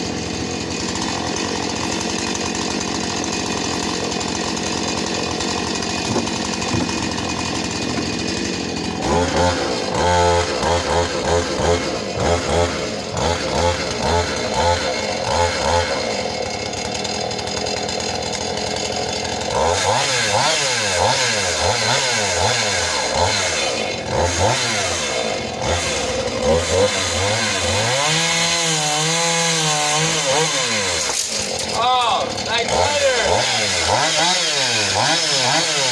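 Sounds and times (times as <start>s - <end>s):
chainsaw revving: 0.0s - 35.9s.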